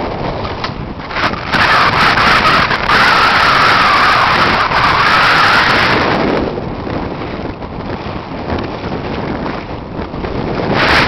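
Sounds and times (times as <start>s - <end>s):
strong wind buffeting microphone: 0.0s - 11.0s.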